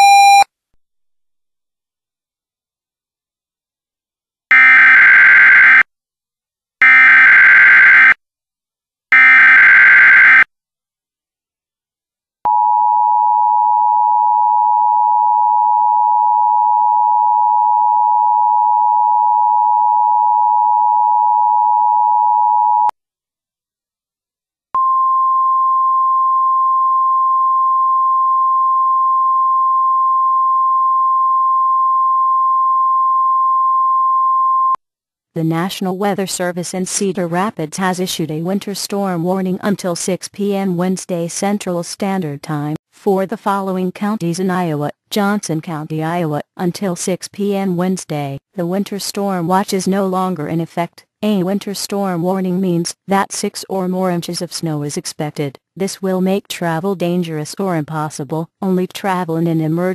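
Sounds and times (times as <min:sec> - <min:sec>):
steady warning alarm tone: 0:04.5 - 0:05.8, 0:06.8 - 0:08.2, 0:09.2 - 0:10.5.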